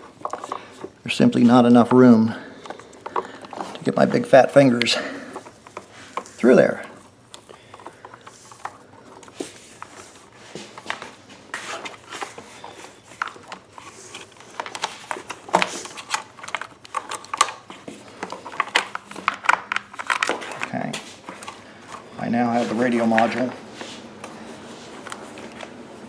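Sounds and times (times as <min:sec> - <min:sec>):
plastic parts clicking and tapping: 0:02.6 - 0:04.2, 0:04.8 - 0:11.1, 0:12.2 - 0:22.0.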